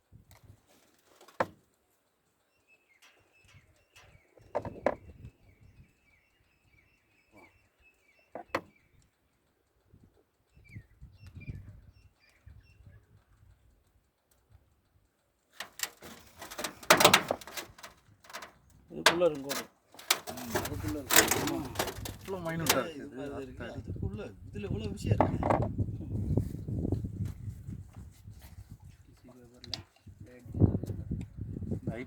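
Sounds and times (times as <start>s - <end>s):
faint bird chirping: 2.1s - 15.2s
rustling noise: 15.6s - 18.6s, 19.5s - 22.9s, 26.2s - 29.3s.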